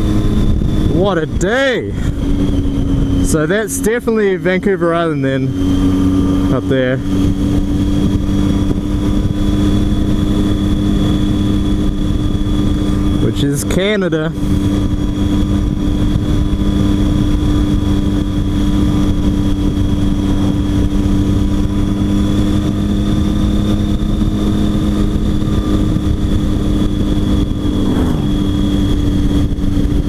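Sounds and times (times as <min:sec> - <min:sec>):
motorcycle engine cruising: 0:00.0 - 0:30.0
wind noise: 0:00.0 - 0:30.0
brief falling tone: 0:27.6 - 0:29.0.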